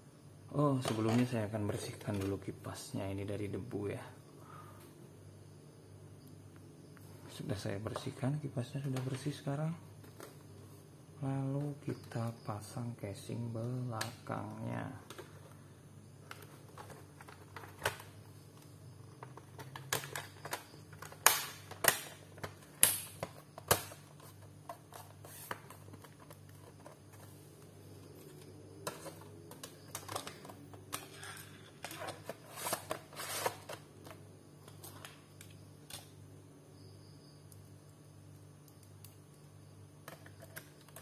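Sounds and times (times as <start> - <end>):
plastic cover clicking into place: 19.2 - 24.8, 28.8 - 36.1.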